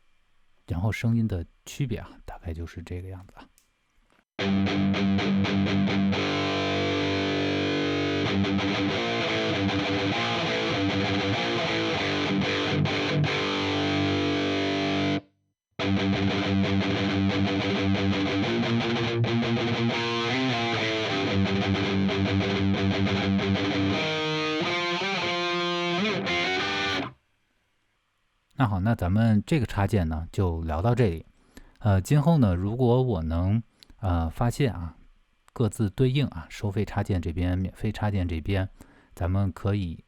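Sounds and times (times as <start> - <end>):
distorted electric guitar riff: 4.4 - 15.2, 15.8 - 27.2.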